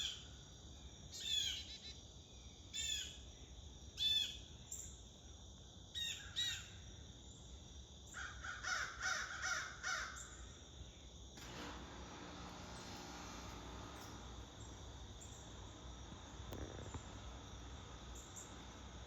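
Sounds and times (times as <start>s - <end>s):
insects droning: 0.0s - 19.0s
crows cawing: 8.2s - 10.3s
steady noise: 12.1s - 19.0s.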